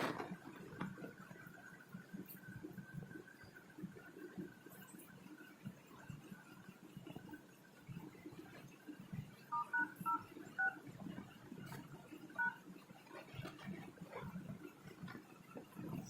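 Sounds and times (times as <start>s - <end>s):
phone keypad dialing beeps: 9.5s - 10.8s, 12.4s - 12.6s.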